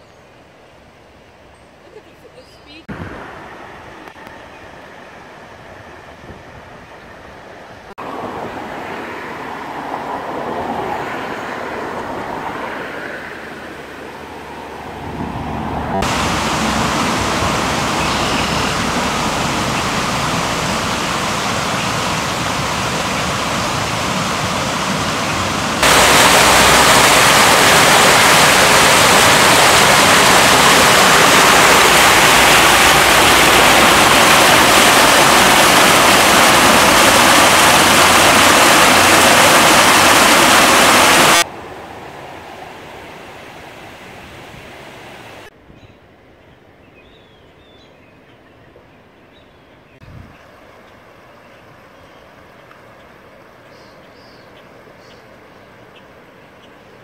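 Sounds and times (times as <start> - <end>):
rushing floodwater: 7.9 - 45.5.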